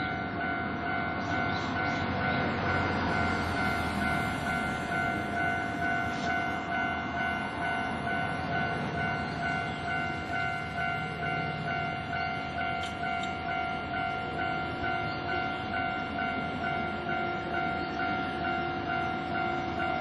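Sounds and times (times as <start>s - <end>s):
level-crossing warning bell ringing: 0.0s - 20.0s
train rumbling past: 0.0s - 20.0s.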